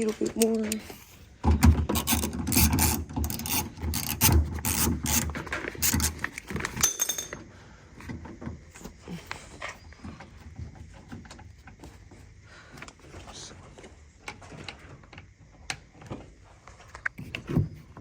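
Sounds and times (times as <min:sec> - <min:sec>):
ratchet clicking and scraping: 0:00.0 - 0:07.4
faint handling noise: 0:00.0 - 0:18.0.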